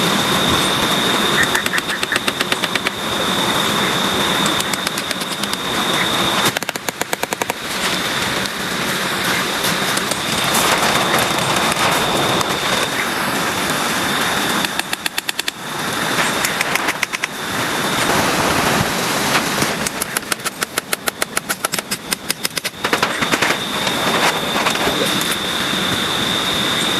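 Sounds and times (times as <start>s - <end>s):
constant high whine: 0.0s - 26.9s
heavy rain falling: 7.6s - 14.9s, 15.5s - 20.0s.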